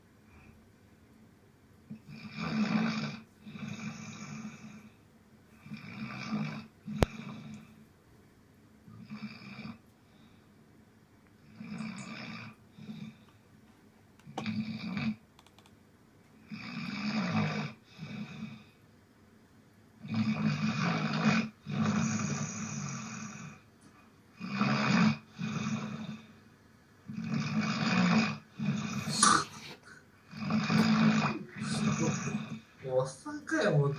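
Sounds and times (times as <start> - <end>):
person snoring: 2.0 - 4.9, 5.6 - 7.6, 11.4 - 13.3, 14.3 - 15.2, 16.4 - 18.6, 20.0 - 23.6, 24.4 - 26.3, 27.1 - 32.8.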